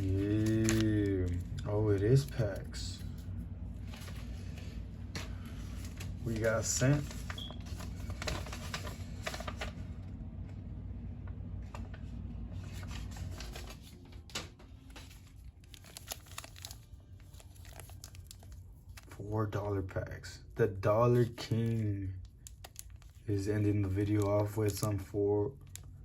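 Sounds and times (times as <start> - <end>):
packaging crinkling and tearing: 0.0 - 9.8, 12.6 - 19.2, 21.3 - 24.9, 25.6 - 26.0
low hum: 0.0 - 19.4.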